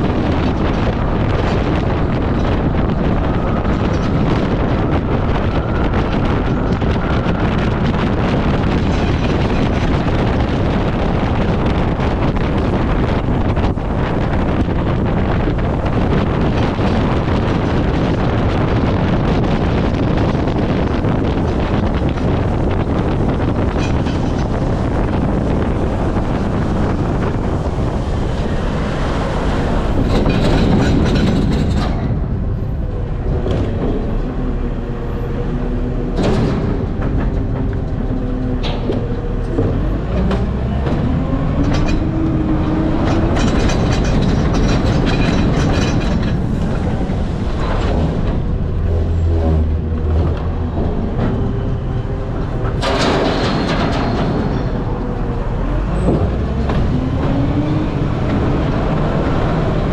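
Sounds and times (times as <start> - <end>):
clunks and knocks: 0.0 - 34.8, 36.0 - 59.9
garbage truck engine drone: 0.0 - 59.9.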